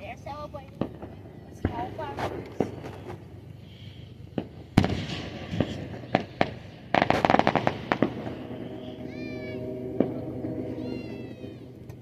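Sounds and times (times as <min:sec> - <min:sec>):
fireworks crackling pops: 0:00.6 - 0:03.3, 0:04.3 - 0:09.2
fireworks bangs: 0:00.8 - 0:03.3, 0:04.3 - 0:12.0.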